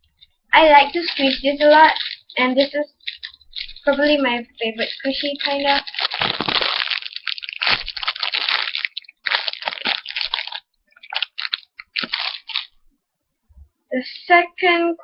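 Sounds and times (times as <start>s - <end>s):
foam squishy being squeezed: 0.6s - 12.8s.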